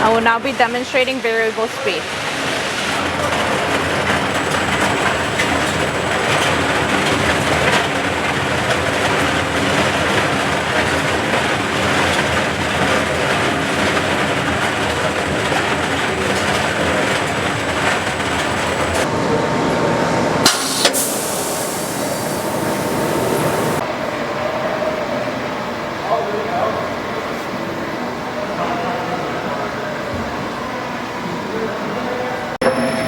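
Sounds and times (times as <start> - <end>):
ribbon mixer running: 4.1 - 7.4, 16.0 - 19.1, 20.5 - 23.8.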